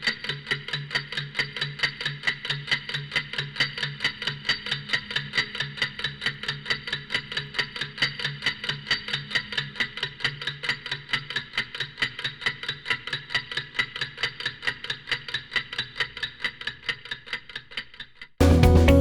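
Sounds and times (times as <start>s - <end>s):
loud guitar music: 18.4s - 19.0s.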